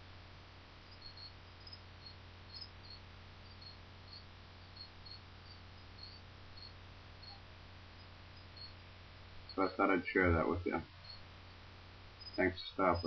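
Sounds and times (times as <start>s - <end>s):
low hum and hiss: 0.0s - 13.0s
crickets chirping: 0.8s - 13.0s.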